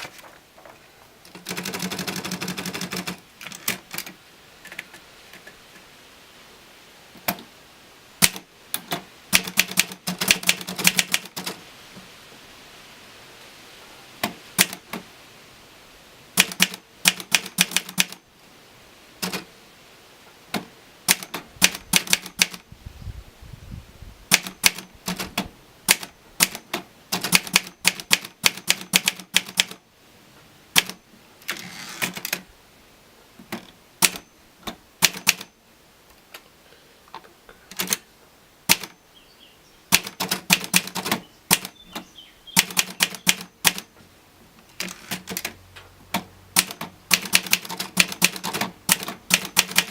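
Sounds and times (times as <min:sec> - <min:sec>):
typewriter key strikes: 0:08.2 - 0:11.6, 0:16.4 - 0:18.2, 0:19.2 - 0:19.4, 0:24.3 - 0:29.8, 0:30.8 - 0:31.0, 0:35.0 - 0:35.5, 0:39.9 - 0:41.7, 0:42.6 - 0:43.9, 0:46.6 - 0:49.9.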